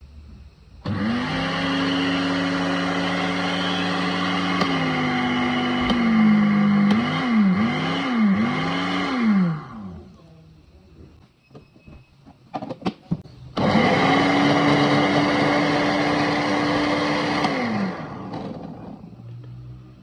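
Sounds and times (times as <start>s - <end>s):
blender motor whining: 0.8s - 10.1s, 13.5s - 20.0s.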